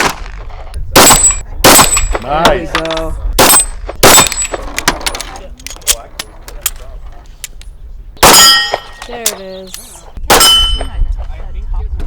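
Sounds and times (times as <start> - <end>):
steel target ringing: 8.2 - 9.0, 10.4 - 10.9.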